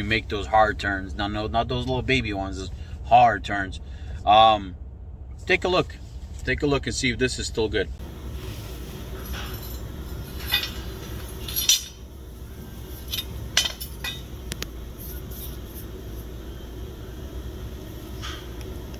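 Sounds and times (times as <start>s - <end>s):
low steady rumble: 0.0s - 18.9s
light clinks and knocks: 8.6s - 16.6s.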